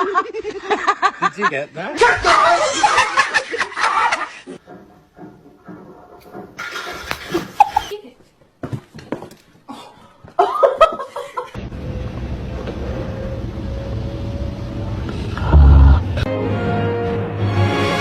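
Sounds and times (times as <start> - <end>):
people laughing: 0.0 - 4.6, 10.4 - 11.6.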